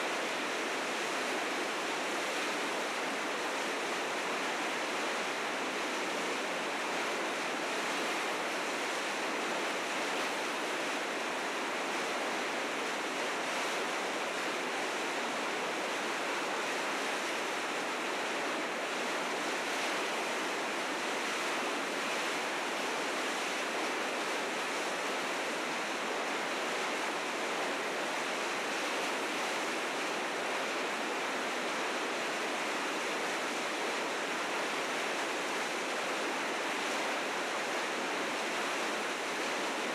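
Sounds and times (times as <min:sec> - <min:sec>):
river rapids rushing: 0:00.0 - 0:39.9.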